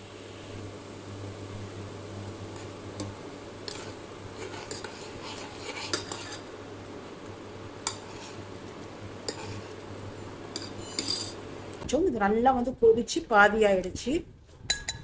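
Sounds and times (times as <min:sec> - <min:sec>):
low steady hum: 0:00.0 - 0:15.0
metal utensil clinking on pot: 0:10.5 - 0:11.4.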